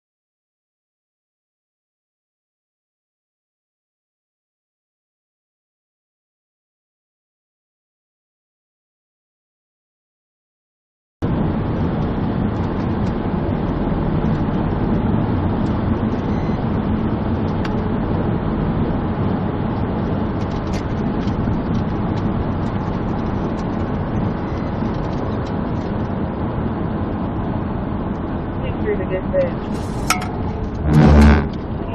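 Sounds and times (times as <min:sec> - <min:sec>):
car engine and road noise: 0:11.2 - 0:31.9.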